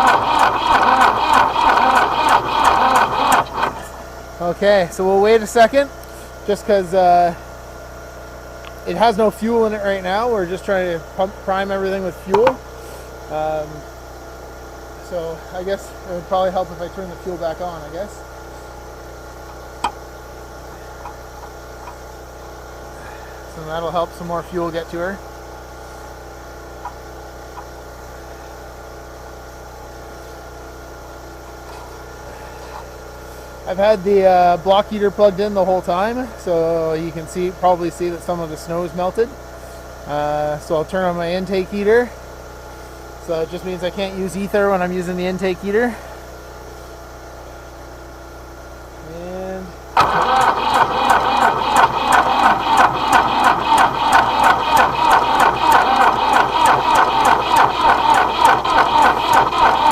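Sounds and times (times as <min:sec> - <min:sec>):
diesel engine cranking: 0:00.0 - 0:04.2, 0:50.0 - 0:59.9
portable generator running: 0:00.0 - 0:04.8, 0:50.0 - 0:59.9.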